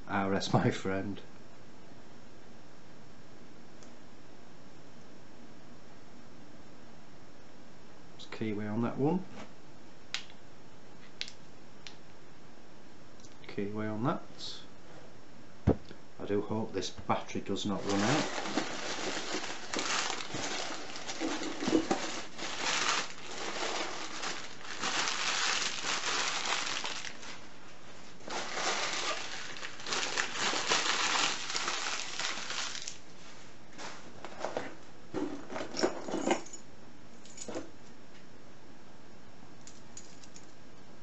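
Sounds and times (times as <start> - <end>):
paper packing rustling: 17.6 - 35.8
metal keys and locks clinking: 39.7 - 40.6.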